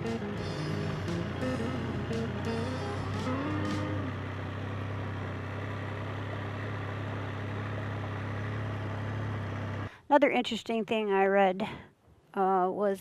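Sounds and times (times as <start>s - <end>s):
engine running low drone: 0.0s - 10.0s.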